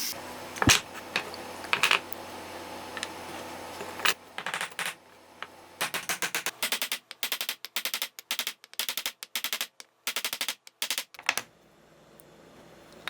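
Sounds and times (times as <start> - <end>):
faint steady hum: 11.2 - 13.0.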